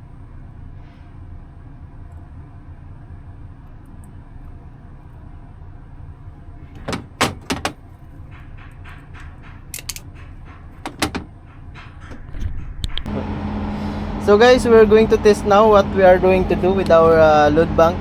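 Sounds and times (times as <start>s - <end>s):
sharp metallic clicks and clatters: 6.7s - 13.2s
low machine hum: 10.6s - 18.0s.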